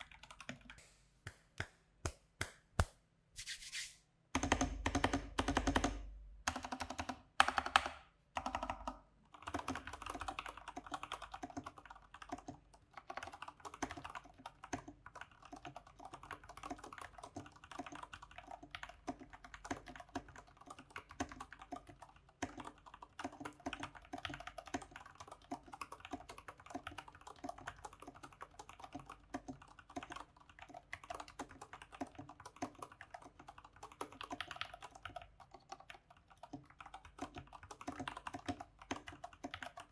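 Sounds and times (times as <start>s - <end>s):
mechanical keyboard typing: 0.0s - 0.8s, 4.4s - 39.9s.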